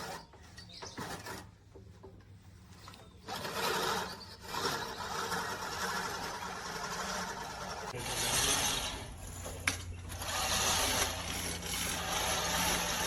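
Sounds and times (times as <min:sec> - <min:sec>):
reel mower whirring: 0:03.3 - 0:13.0.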